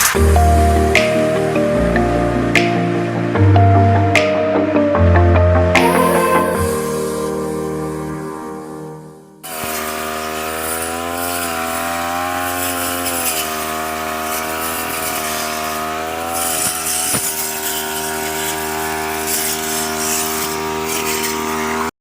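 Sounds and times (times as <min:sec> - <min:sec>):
grass cutter engine running: 0:09.5 - 0:21.9.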